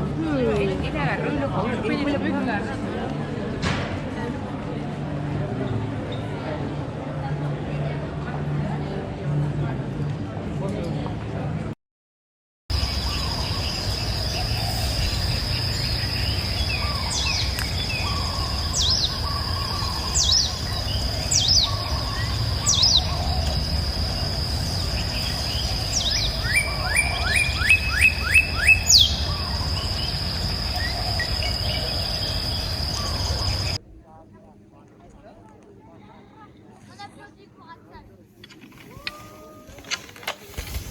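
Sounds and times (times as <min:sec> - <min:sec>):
birds chirping: 0:12.7 - 0:33.8.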